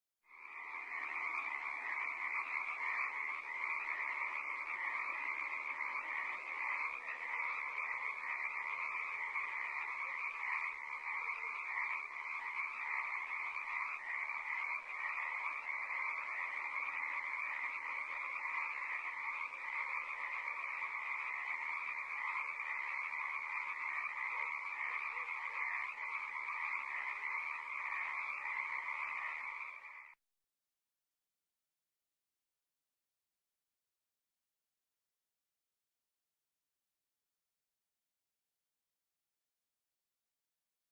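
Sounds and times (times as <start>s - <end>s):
frogs croaking: 0.2s - 30.2s.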